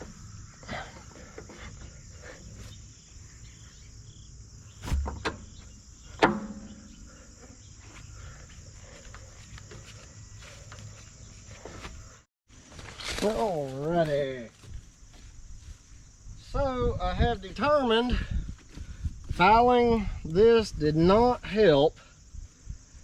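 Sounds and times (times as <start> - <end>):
crickets chirring: 0.0 - 23.0
dull thump: 4.8 - 7.1.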